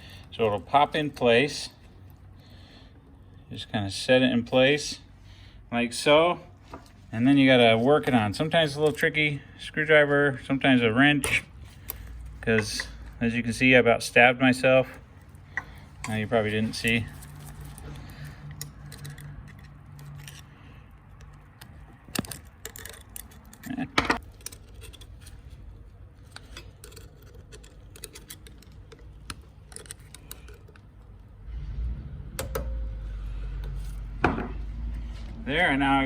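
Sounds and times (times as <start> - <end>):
low steady rumble: 24.3 - 36.0.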